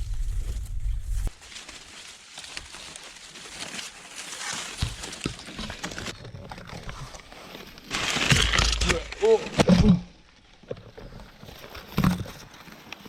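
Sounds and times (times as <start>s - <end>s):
wind rumble on microphone: 0.0s - 1.3s
corn leaves rustling and crackling: 0.0s - 13.0s.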